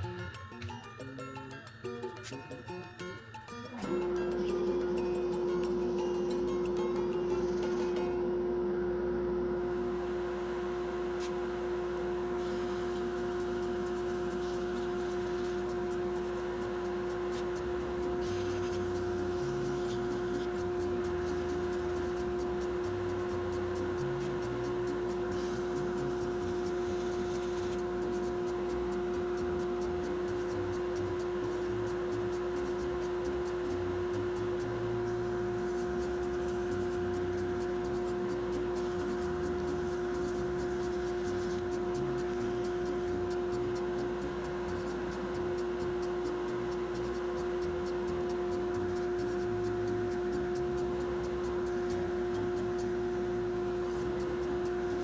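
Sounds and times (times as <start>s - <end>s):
dust collector air hiss: 12.2s - 55.0s
fast regular ticking: 12.8s - 34.7s, 35.6s - 52.9s
sandpaper rubbing on spinning wood: 17.3s - 34.7s, 35.6s - 52.7s, 53.8s - 55.0s.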